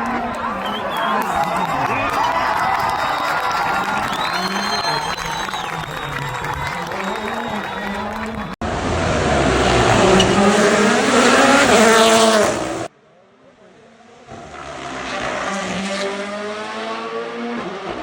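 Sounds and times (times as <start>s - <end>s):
rally car approaching: 0.0s - 12.9s
rally car engine accelerating: 4.0s - 12.9s, 13.6s - 18.0s.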